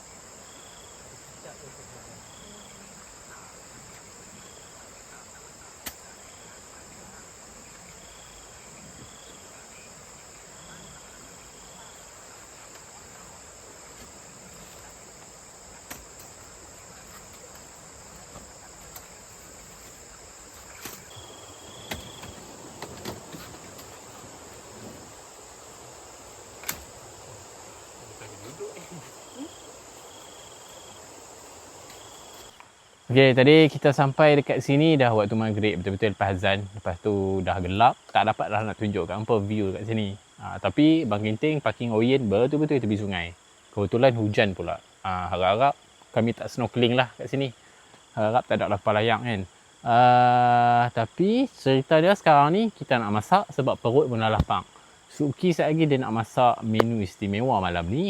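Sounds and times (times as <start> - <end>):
high-pitched insect drone: 0.0 - 43.3
insect chirps: 0.0 - 58.0.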